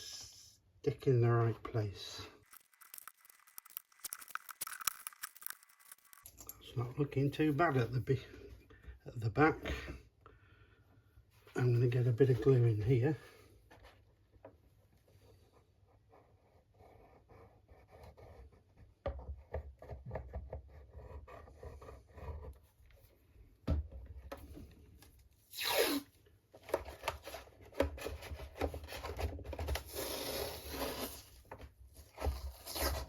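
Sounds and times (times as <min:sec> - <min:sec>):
hands rubbing and scraping wood: 0:02.4 - 0:06.3.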